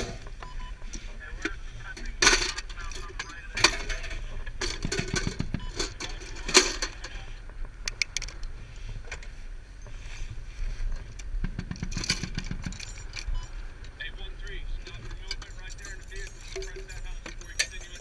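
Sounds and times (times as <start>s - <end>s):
machine gun reloading clanks: 2.1s - 7.2s, 11.8s - 13.4s, 14.9s - 18.0s
short metallic rattles: 11.4s - 13.4s.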